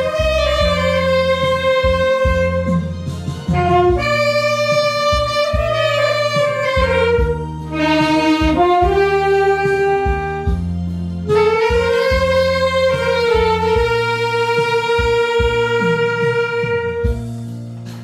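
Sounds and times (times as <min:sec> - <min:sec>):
bass: 0:00.0 - 0:18.0
saxophone slow melody: 0:00.0 - 0:18.0
steady drum beat: 0:00.0 - 0:18.0.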